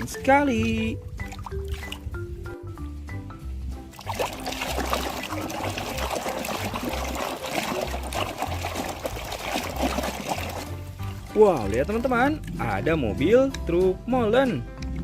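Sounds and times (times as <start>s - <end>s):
music with steady bass beat: 0.0s - 6.1s, 9.8s - 15.0s
water splashing and sloshing: 0.8s - 2.2s, 3.8s - 12.8s.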